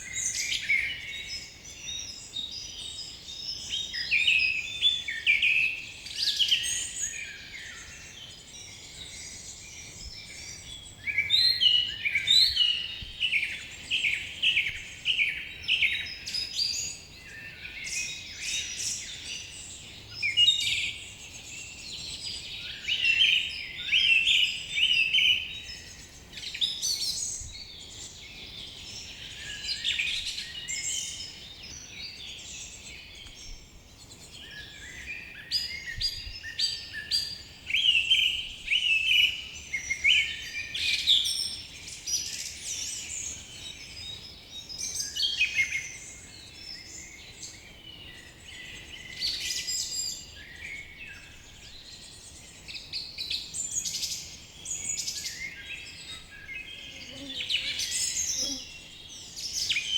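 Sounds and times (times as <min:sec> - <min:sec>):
songbirds singing and chirping: 0:00.0 - 0:59.9.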